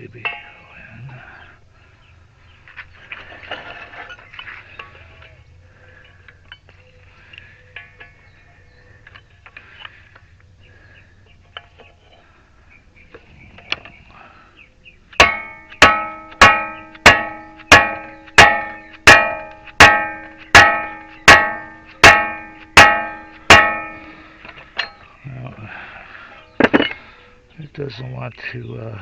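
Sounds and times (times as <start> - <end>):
metal tools clinking: 3.1 - 5.4, 7.7 - 8.4, 15.2 - 25.1, 26.6 - 27.0
hammer striking steel: 15.2 - 25.0.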